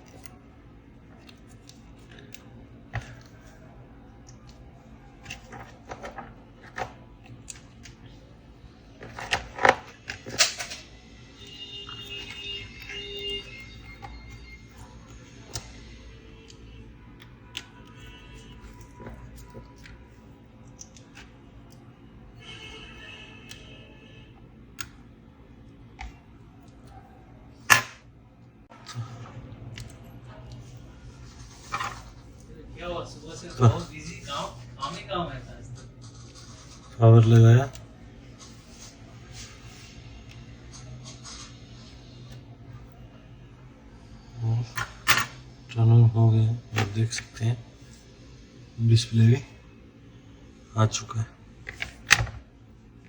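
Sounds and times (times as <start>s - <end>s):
clicks and knocks of laptop parts: 27.7s - 28.0s.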